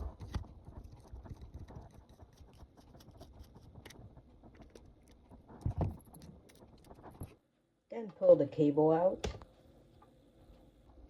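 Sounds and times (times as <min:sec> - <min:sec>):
screwdriver scratching and clicking: 0:00.0 - 0:07.4.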